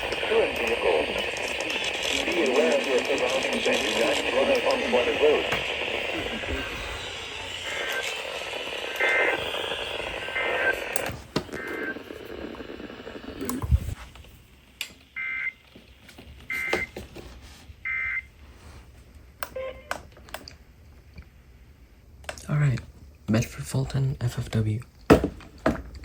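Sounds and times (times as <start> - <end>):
buzzy digital tone bursts: 0.0 - 11.0
radio static: 0.0 - 14.0.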